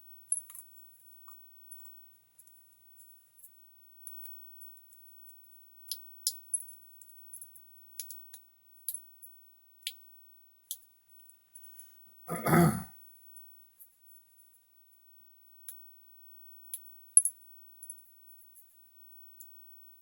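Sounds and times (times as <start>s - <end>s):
small parts clicking and tapping: 0.3s - 11.9s, 15.6s - 15.9s, 16.5s - 19.6s
man's throaty vocal noise: 12.3s - 12.9s.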